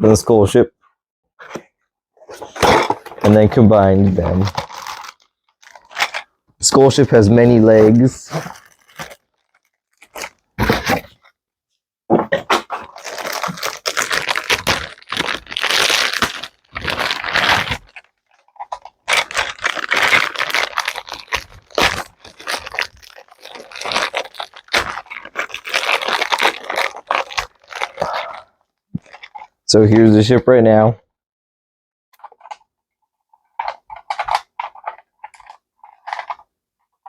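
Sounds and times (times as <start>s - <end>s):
cardboard and plastic tearing: 2.3s - 11.3s, 12.3s - 29.5s.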